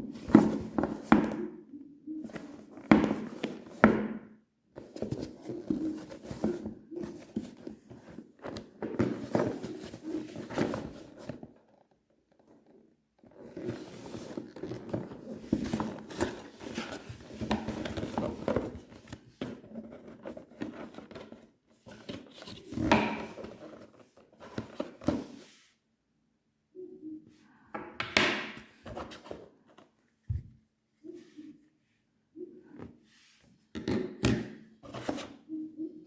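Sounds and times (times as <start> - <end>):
packaging rustling and scraping: 4.8 - 25.4.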